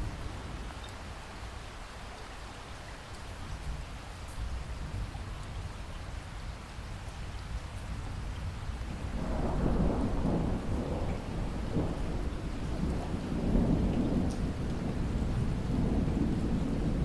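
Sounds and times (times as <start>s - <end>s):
steady rain: 0.0s - 17.0s
distant thunder rumbling: 8.9s - 17.0s.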